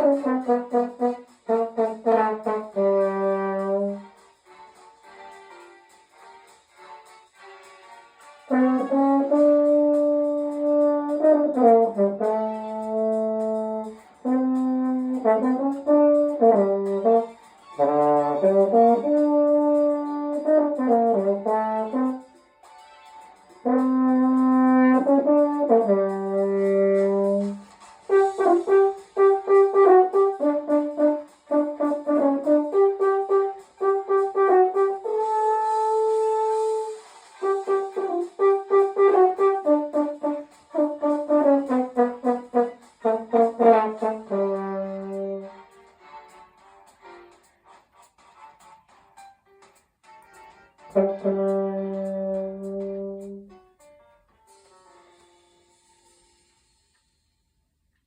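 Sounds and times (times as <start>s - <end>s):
french horn playing a melody: 0.0s - 5.7s, 7.5s - 22.3s, 23.6s - 45.6s, 50.9s - 53.5s.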